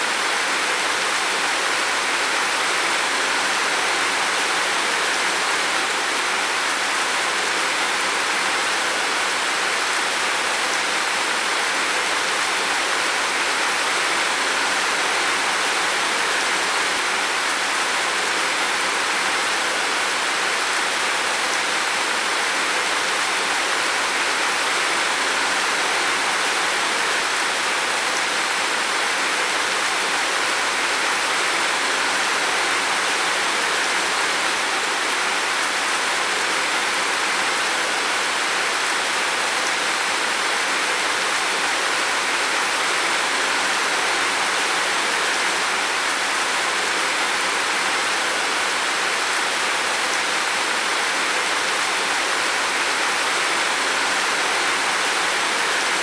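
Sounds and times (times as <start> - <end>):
heavy rain on a roof: 0.0 - 56.0.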